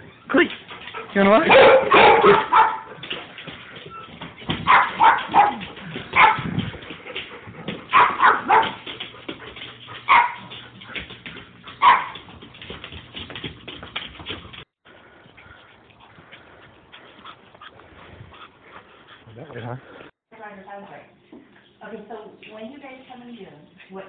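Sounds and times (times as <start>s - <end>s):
dog barking: 1.2s - 3.0s, 4.6s - 6.5s, 7.9s - 8.8s, 10.1s - 10.5s, 11.8s - 12.2s.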